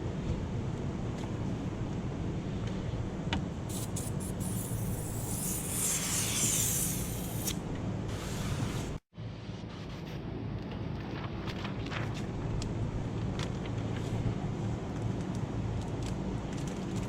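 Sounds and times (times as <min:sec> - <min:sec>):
steady low hum: 0:00.0 - 0:14.7
water sprayer hissing on glass: 0:03.7 - 0:09.0.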